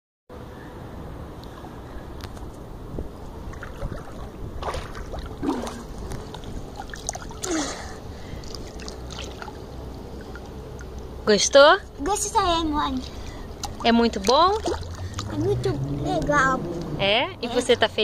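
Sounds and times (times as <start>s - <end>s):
water sloshing and splashing: 3.2s - 11.3s, 12.1s - 17.0s.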